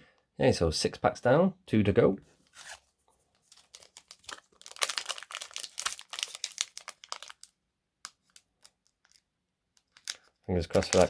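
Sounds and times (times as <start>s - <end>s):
foil wrapper crinkling and tearing: 3.4s - 9.2s, 10.0s - 11.0s.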